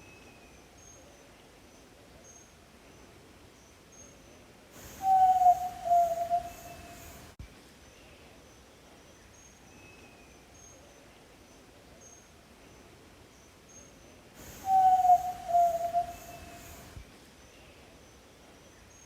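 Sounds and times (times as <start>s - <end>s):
faint high chirps: 4.8s - 8.0s, 14.4s - 17.6s
bird low whistled note: 5.0s - 7.2s, 14.6s - 16.9s.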